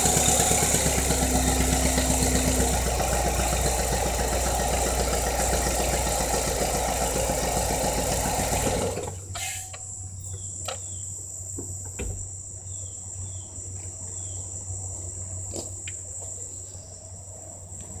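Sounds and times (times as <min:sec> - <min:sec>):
engine idling with rapid knock: 0:00.0 - 0:09.3.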